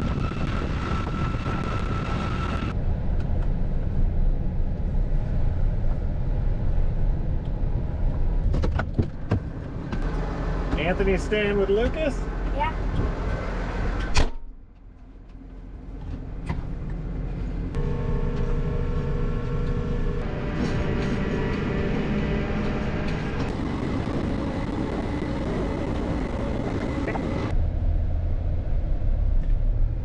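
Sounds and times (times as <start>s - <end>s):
steady whining tone: 0.0s - 3.5s, 9.5s - 14.1s, 14.7s - 27.7s
tractor engine running: 9.2s - 14.0s, 14.8s - 27.5s.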